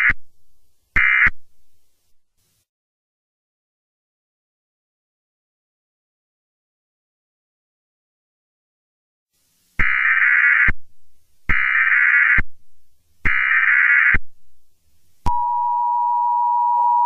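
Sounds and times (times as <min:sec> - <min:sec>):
loud two-tone alarm: 0:01.0 - 0:01.3, 0:09.8 - 0:10.7, 0:11.5 - 0:12.4, 0:13.3 - 0:14.2
digital data tone bursts: 0:09.8 - 0:10.7, 0:11.5 - 0:12.4, 0:13.3 - 0:14.2.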